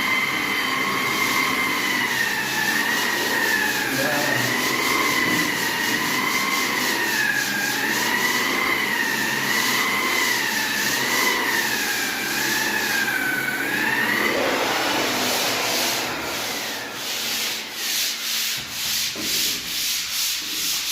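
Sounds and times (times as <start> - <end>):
electric wall sander grinding: 0.0 - 20.8.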